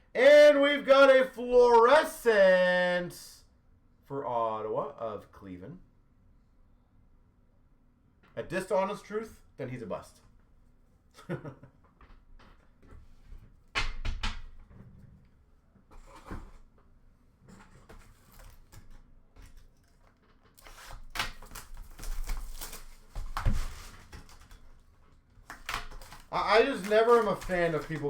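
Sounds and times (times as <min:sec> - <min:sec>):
cards knocking and clicking: 0:25.4 - 0:28.0
cards shuffling and sliding: 0:25.5 - 0:28.0.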